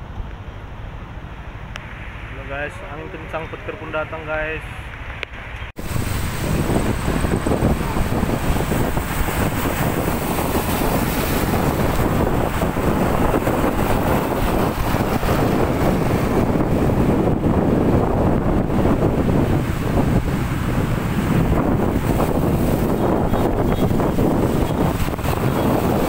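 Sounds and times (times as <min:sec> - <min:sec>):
strong wind on microphone: 0:05.7 - 0:26.0.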